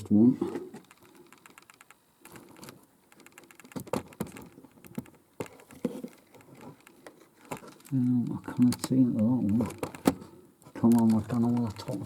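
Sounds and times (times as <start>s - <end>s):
small clicks: 0.8s - 10.0s.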